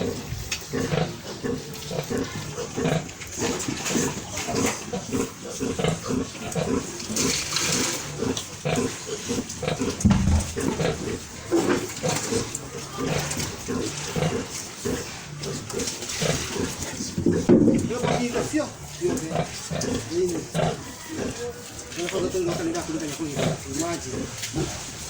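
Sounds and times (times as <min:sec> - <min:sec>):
pigs grunting: 0:00.0 - 0:25.0
loud low knock: 0:10.0 - 0:11.0.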